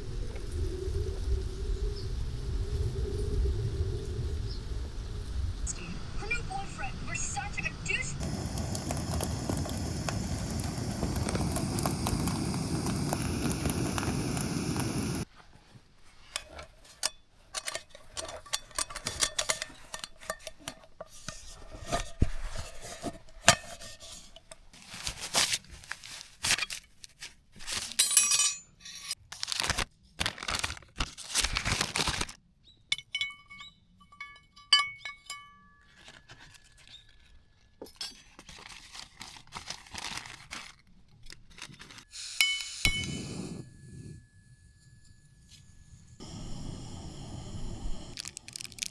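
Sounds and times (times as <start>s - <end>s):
steady rushing noise: 0.0s - 15.3s
camp cooking gear clinking: 6.3s - 27.1s, 27.7s - 29.2s, 32.9s - 39.0s, 41.3s - 48.9s
packaging crinkling: 24.7s - 28.0s, 29.3s - 32.4s, 38.4s - 42.1s, 48.2s - 48.9s
short metallic pings: 42.3s - 46.2s.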